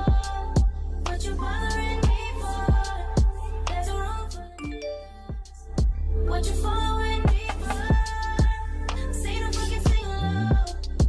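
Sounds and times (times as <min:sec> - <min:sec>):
deep sustained bass: 0:00.0 - 0:11.0
held melodic notes: 0:04.6 - 0:05.3.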